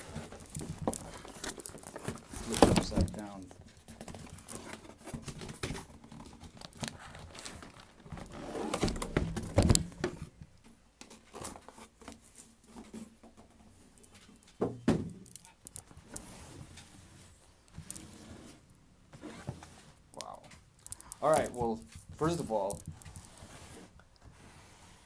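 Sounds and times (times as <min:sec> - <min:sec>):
cardboard boxes being handled: 0:00.0 - 0:10.4, 0:21.1 - 0:25.0.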